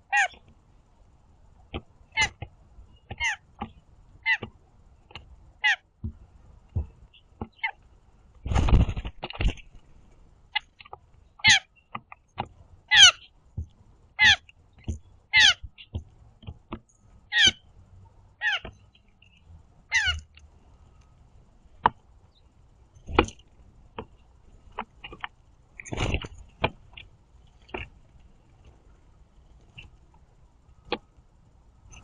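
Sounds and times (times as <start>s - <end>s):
blue jays squeaky calls: 0.0s - 0.4s, 2.1s - 2.4s, 3.0s - 4.5s, 5.6s - 5.9s, 10.5s - 11.8s, 12.9s - 13.3s, 14.2s - 14.5s, 15.3s - 16.0s, 17.3s - 17.7s, 18.4s - 20.3s.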